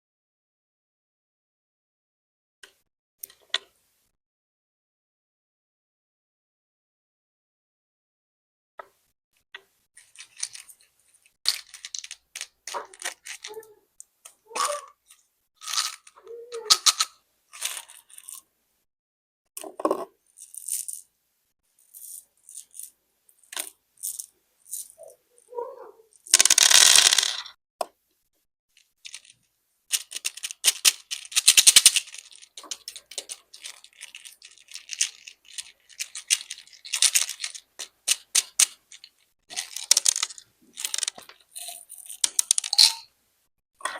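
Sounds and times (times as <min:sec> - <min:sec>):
hard candies clattering: 0:10.0 - 0:13.6, 0:15.6 - 0:18.4, 0:26.2 - 0:27.5, 0:28.9 - 0:43.1
candies pouring: 0:10.0 - 0:13.7, 0:15.6 - 0:18.4, 0:20.4 - 0:21.0, 0:26.1 - 0:27.4, 0:29.0 - 0:43.1.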